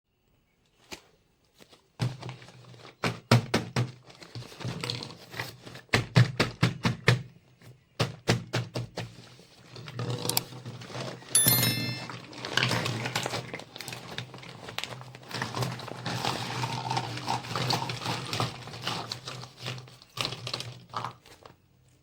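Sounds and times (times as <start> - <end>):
packaging rustling: 13.0 - 21.5.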